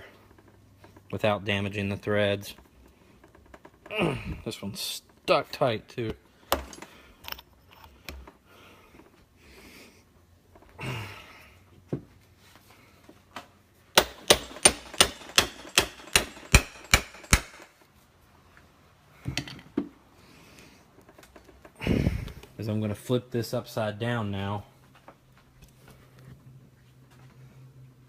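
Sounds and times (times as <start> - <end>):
hammer tapping on metal: 14.0 - 17.7.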